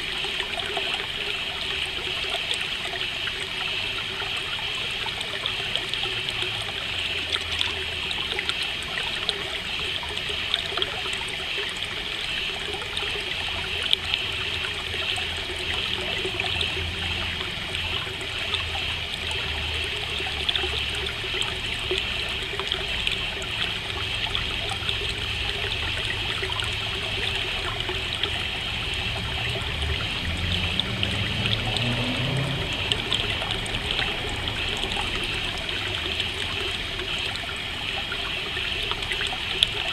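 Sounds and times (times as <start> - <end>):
stream trickling and babbling: 0.0 - 39.9.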